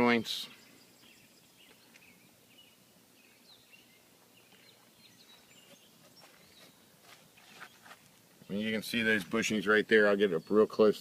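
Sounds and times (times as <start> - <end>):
faint bird chirps: 0.1 - 8.9.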